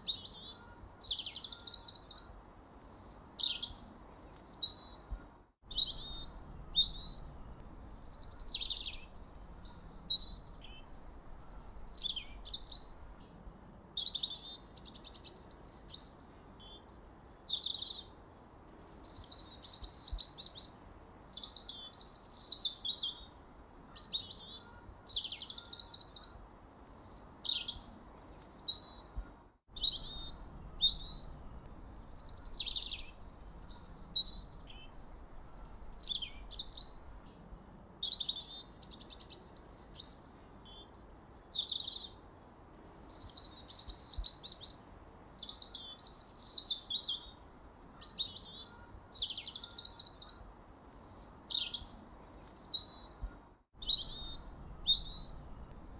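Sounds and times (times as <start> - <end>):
faint steady hiss: 2.0 - 49.4, 50.0 - 55.9
songbirds chirping and singing: 29.8 - 37.2, 48.0 - 55.9.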